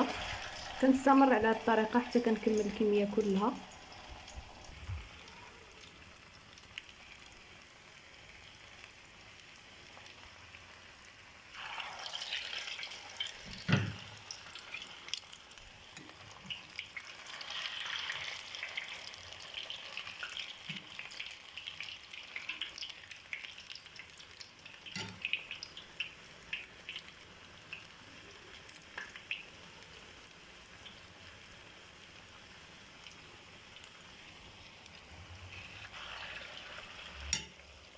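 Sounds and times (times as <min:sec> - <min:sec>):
potato frying in oil: 0:00.0 - 0:37.9.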